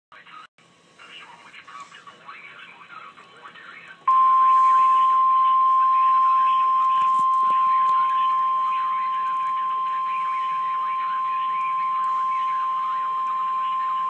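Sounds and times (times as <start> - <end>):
steady warning tone: 4.1 - 14.0.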